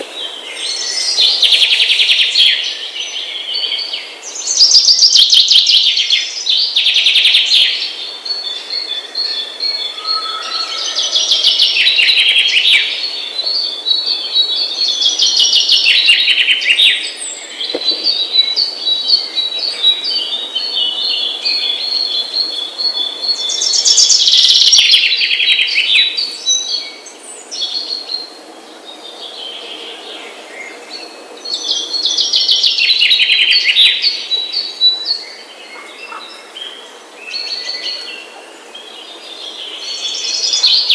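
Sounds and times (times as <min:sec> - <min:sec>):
birds singing: 0:00.0 - 0:40.9.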